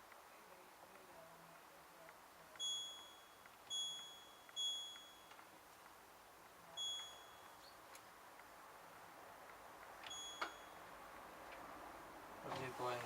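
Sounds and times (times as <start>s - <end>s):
washing machine beeps: 2.6s - 5.3s, 6.8s - 7.6s, 10.1s - 10.8s.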